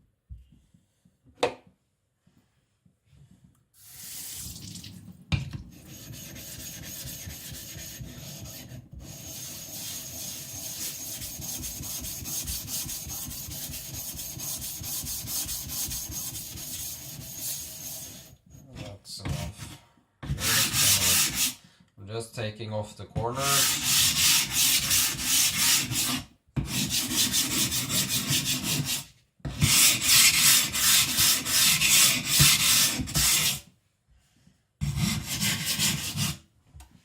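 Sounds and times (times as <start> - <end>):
wet scraping on whetstone: 5.7 - 18.4.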